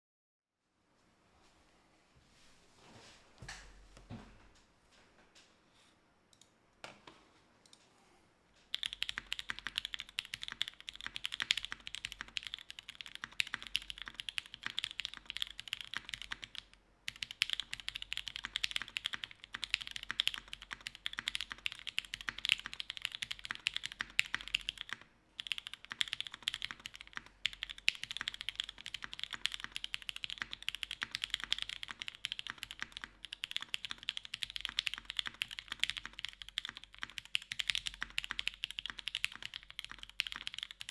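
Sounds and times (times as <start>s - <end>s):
fast mechanical keyboard typing: 8.7s - 40.9s.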